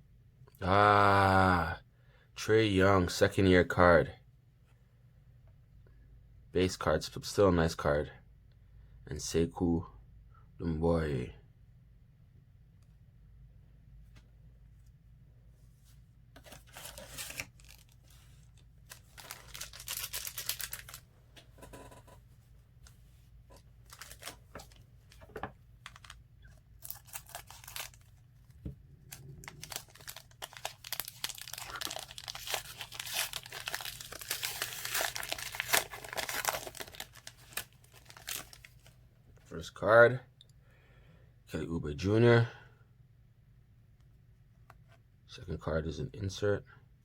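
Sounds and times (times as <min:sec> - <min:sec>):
card pack wrapper tearing and crinkling: 0:16.4 - 0:21.1, 0:23.9 - 0:28.5, 0:29.1 - 0:38.9.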